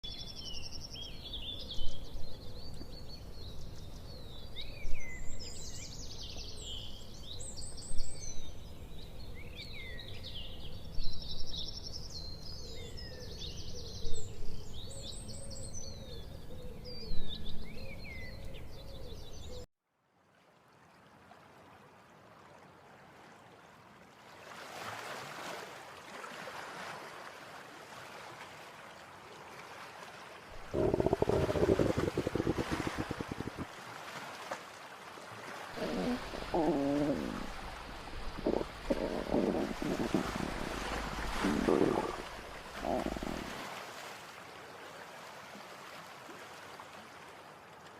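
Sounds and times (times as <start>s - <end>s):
birds chirping and twittering: 30.6s - 33.6s, 35.8s - 43.6s
faint hissing: 30.6s - 33.6s, 35.8s - 43.7s.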